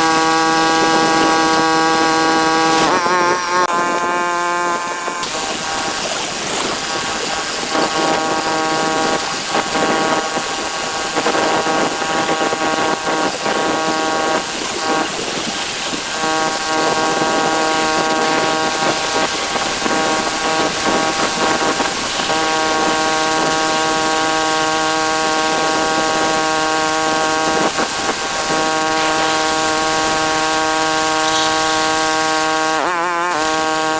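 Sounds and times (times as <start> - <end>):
pressure washer motor hum: 0.0 - 33.9
water spray hissing: 25.4 - 32.9.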